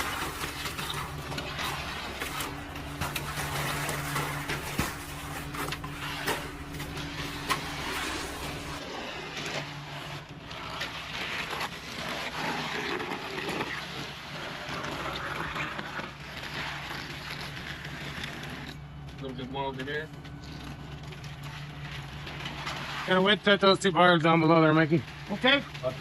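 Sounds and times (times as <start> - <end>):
concrete scraping down chute: 0.0 - 18.7.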